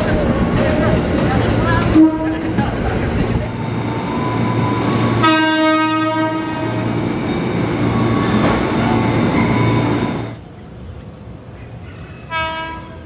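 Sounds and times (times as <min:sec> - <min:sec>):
train running rumble: 0:00.0 - 0:10.5
electric train horn: 0:04.0 - 0:10.3, 0:12.3 - 0:13.0.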